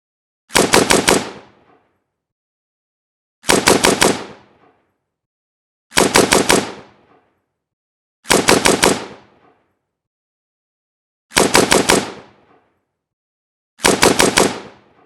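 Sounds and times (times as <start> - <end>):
assault rifle firing bursts: 0.5 - 1.7, 3.4 - 4.6, 5.9 - 7.1, 8.3 - 9.4, 11.3 - 12.5, 13.8 - 15.0.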